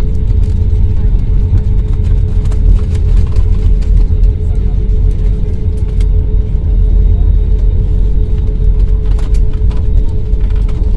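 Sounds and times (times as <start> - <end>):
airliner cabin low rumble: 0.0 - 10.9
steady hum: 0.0 - 10.9.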